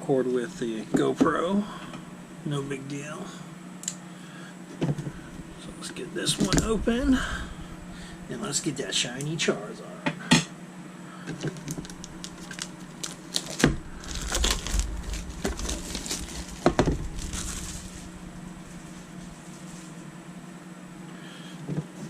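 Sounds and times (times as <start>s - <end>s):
rustling of paper and card: 11.4s - 20.1s.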